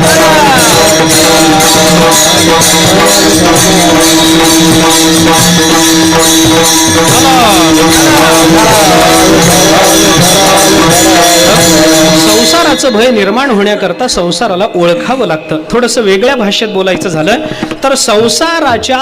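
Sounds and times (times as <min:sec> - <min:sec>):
person singing: 0:00.0 - 0:05.8, 0:06.5 - 0:12.8
harmonium drone chord: 0:00.0 - 0:13.0
hand cymbals clashing: 0:00.0 - 0:13.4.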